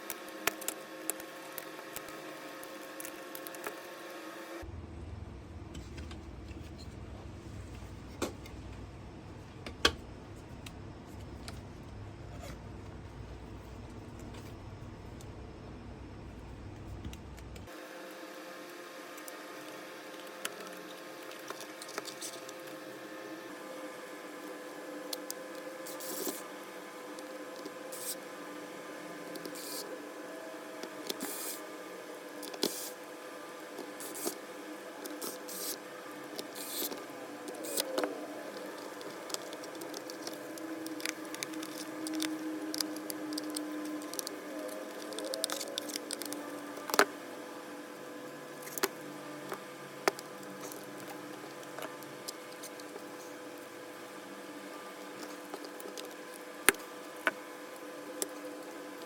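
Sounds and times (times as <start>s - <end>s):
faint steady hum: 0.0s - 59.0s.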